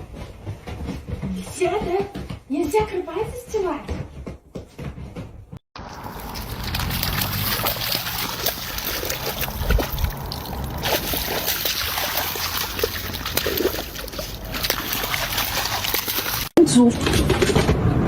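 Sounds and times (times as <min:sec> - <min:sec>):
water splashing and sloshing: 0:05.8 - 0:17.6.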